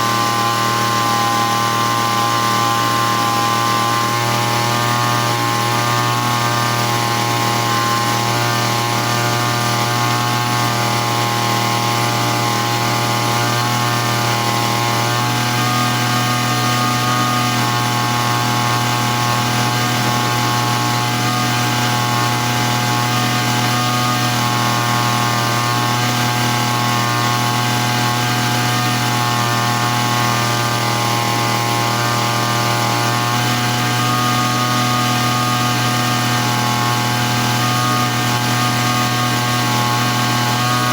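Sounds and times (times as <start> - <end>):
small grass-cutter engine running: 0.0 - 40.9.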